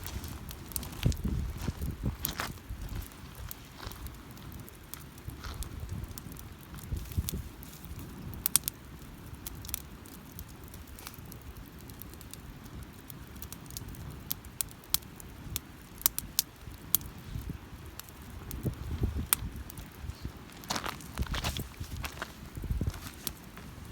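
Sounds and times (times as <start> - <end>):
campfire crackling and popping: 0.0 - 23.9
footsteps thudding on ground: 20.7 - 23.2.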